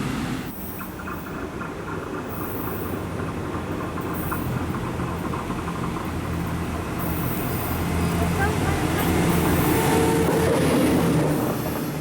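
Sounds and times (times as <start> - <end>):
diesel locomotive droning: 0.0 - 12.0.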